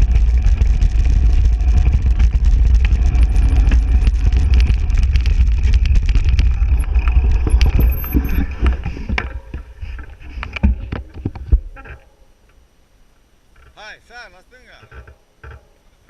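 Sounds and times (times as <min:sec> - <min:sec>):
wind buffeting microphone: 0:00.0 - 0:11.6.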